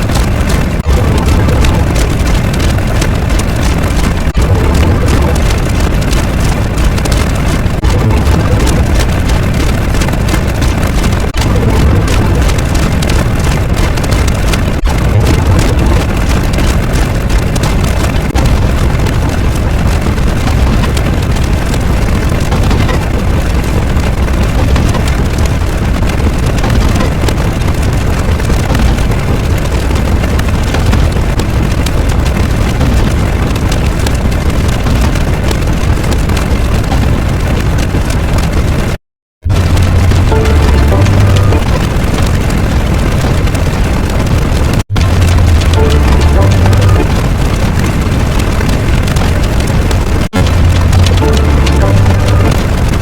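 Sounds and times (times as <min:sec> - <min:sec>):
loud deep rumbling noise: 0:00.0 - 0:53.0.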